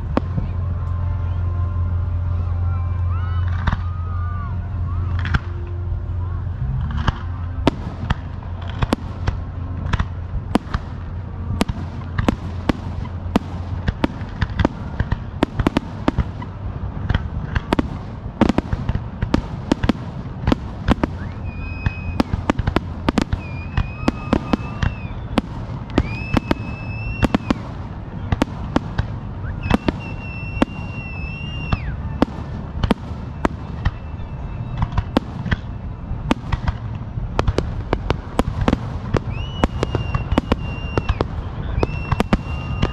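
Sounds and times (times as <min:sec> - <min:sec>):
fireworks bangs and crackles: 0:00.0 - 0:02.3, 0:03.1 - 0:42.9
low rumble: 0:00.0 - 0:42.9
high whistling tones: 0:20.9 - 0:36.8, 0:38.4 - 0:42.9.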